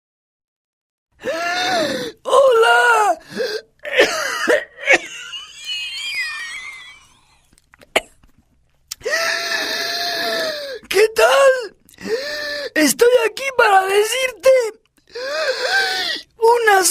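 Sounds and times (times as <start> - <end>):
man coughing harshly: 3.9 - 5.1
whistling wheeze: 5.6 - 7.5.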